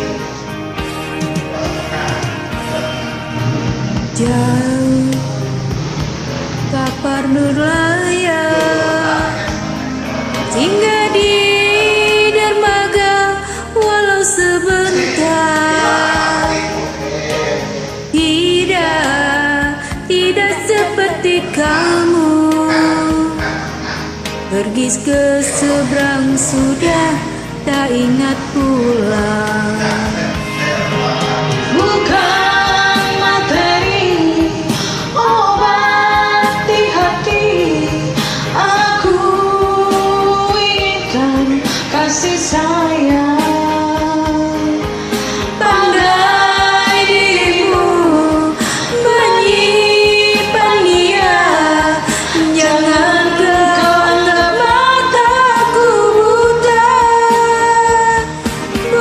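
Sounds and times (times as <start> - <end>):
karaoke backing track: 0.0 - 59.0
woman singing pop song: 4.0 - 5.9, 6.5 - 30.7, 31.5 - 59.0.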